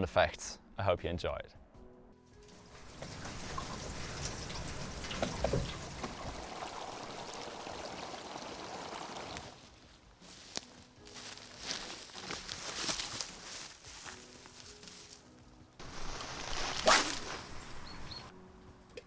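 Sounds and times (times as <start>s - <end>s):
water trickling and splashing: 2.4s - 9.8s, 15.8s - 18.3s.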